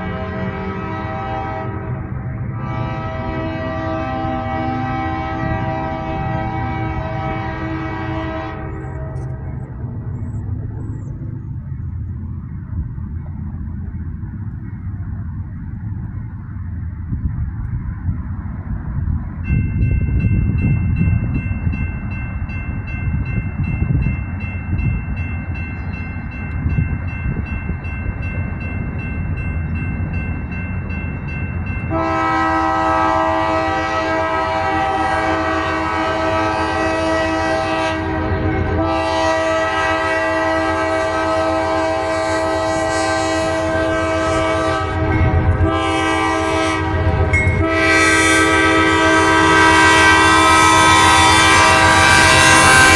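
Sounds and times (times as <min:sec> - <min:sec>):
locomotive air horn blasts: 0:00.0 - 0:09.7, 0:31.9 - 0:52.9
passing train rumble: 0:00.0 - 0:52.9.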